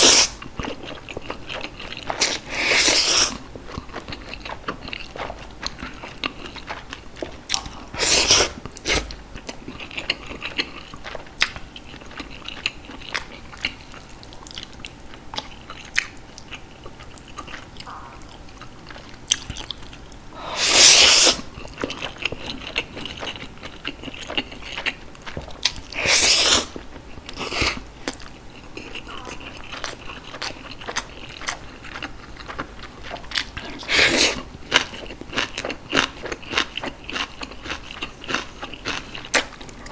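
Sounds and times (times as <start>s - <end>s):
wet chewing and biting: 0.0s - 39.9s.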